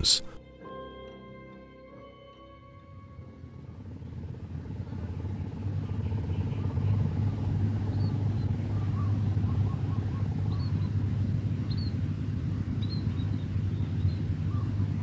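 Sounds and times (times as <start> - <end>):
low outdoor rumble: 2.1 - 15.0
faint bird chirps: 6.5 - 15.0.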